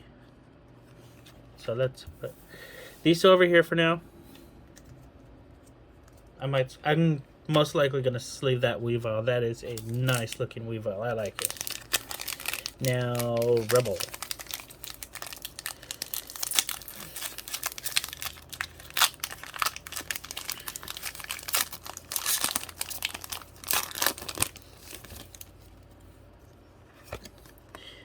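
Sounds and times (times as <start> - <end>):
foil wrapper tearing and crinkling: 9.7 - 10.4, 11.1 - 25.6.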